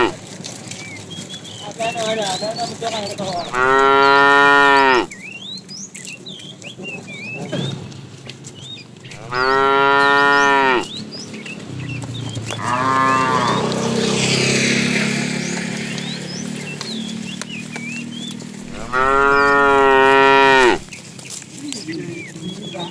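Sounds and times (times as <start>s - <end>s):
cow mooing: 3.3s - 5.2s, 9.0s - 11.0s, 12.6s - 14.0s, 18.6s - 20.9s.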